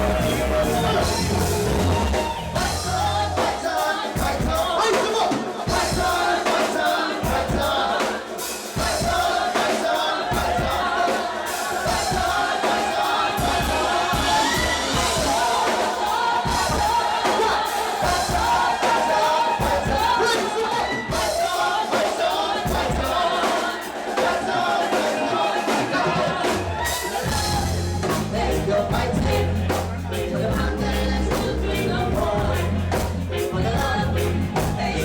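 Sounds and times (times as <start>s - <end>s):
live reggae band playing: 0.0s - 35.0s.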